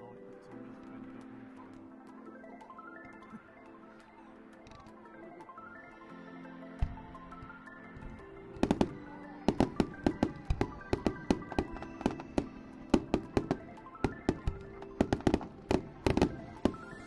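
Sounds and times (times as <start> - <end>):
background music with held notes: 0.0 - 17.0
fireworks bangs and cracks: 8.0 - 17.0.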